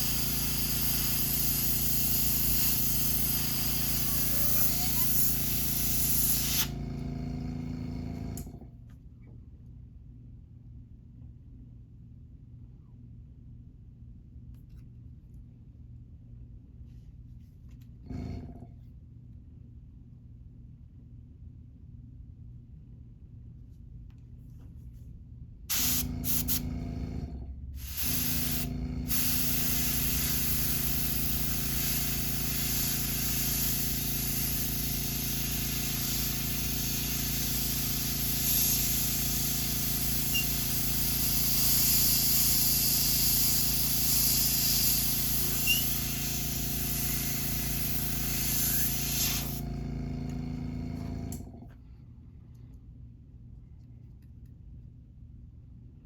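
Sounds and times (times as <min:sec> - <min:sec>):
airbrush spraying hiss: 0:00.0 - 0:06.8, 0:25.7 - 0:26.6, 0:27.8 - 0:49.7
air compressor hum: 0:00.0 - 0:08.8, 0:25.7 - 0:51.9.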